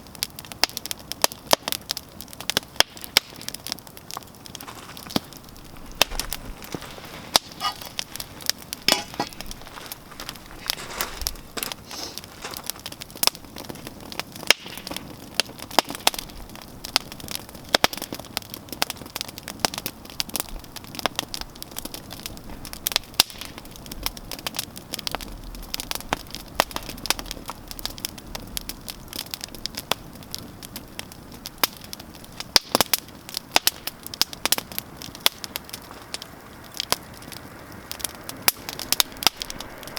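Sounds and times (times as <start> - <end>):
campfire crackling and popping: 0.0 - 39.9
low hiss of flame: 1.2 - 30.2, 31.0 - 39.9
short sizzling hisses: 11.8 - 12.3.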